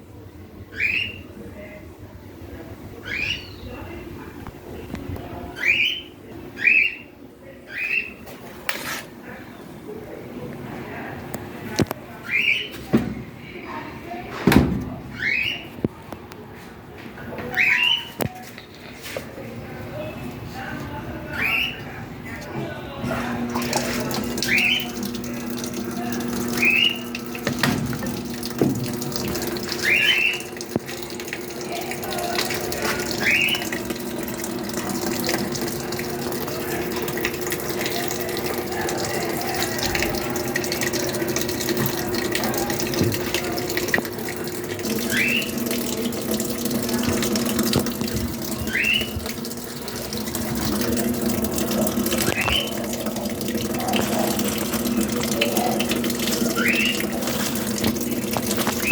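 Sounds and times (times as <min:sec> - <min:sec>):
washing machine hum: 0:00.0 - 0:58.9
water pouring into tub: 0:23.1 - 0:58.9.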